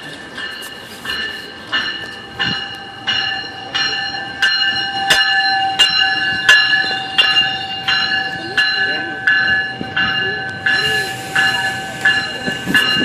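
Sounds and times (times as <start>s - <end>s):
train warning bell ringing: 0.0s - 13.0s.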